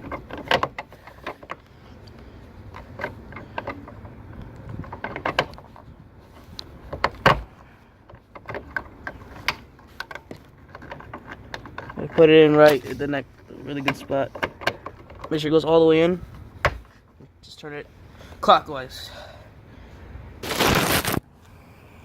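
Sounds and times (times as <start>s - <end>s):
plastic parts clicking and rattling: 0.0s - 15.6s.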